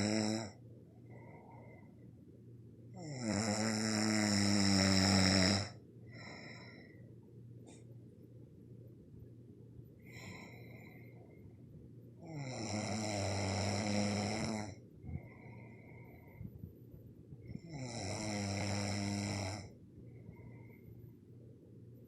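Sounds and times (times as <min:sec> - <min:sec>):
loud snoring: 0:00.0 - 0:00.6, 0:03.0 - 0:05.8, 0:12.2 - 0:14.8, 0:17.6 - 0:19.7
quiet breaths: 0:00.0 - 0:22.0.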